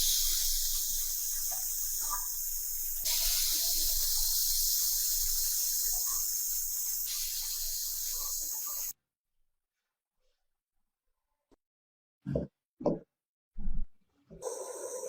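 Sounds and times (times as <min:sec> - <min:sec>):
steady high hiss: 0:00.0 - 0:08.9.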